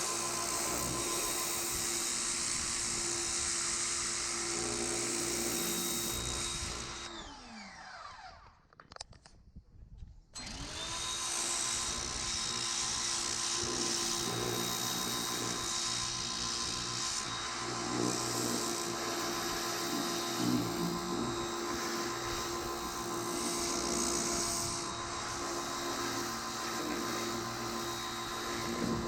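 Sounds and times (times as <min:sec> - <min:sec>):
pressure washer motor hum: 0:00.0 - 0:03.1, 0:10.6 - 0:29.0.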